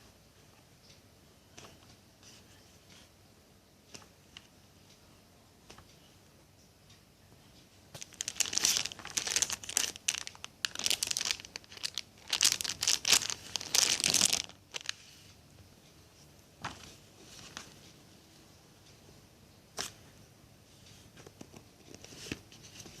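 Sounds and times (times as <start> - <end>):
plastic wrapping crinkling: 8.0 - 15.0.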